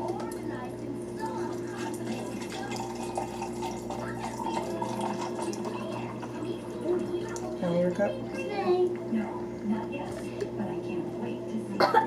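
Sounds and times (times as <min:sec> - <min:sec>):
drink pouring into a cup: 0:00.0 - 0:07.7.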